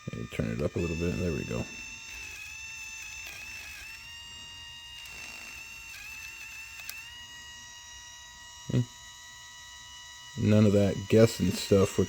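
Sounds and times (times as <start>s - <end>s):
nail grinder motor whine: 0.0s - 12.0s.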